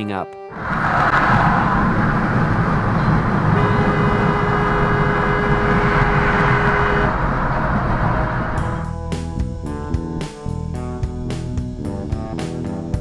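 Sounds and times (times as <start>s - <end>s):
road and engine noise: 0.0s - 13.0s
vehicle horn blast: 3.0s - 7.5s.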